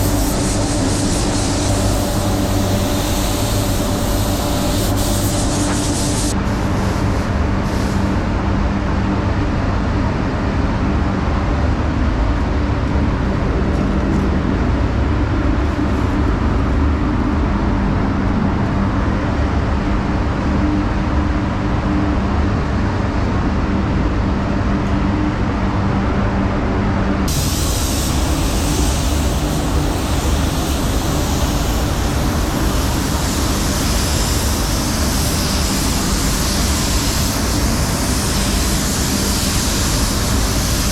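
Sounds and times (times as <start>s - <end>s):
spray gun hissing: 0.0s - 8.2s, 27.3s - 40.9s
spray booth airflow rushing: 0.0s - 8.3s, 27.3s - 40.9s.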